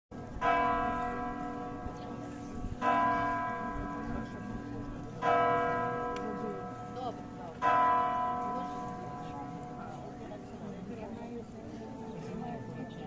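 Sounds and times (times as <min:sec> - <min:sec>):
church bell tolling: 0:00.4 - 0:10.7.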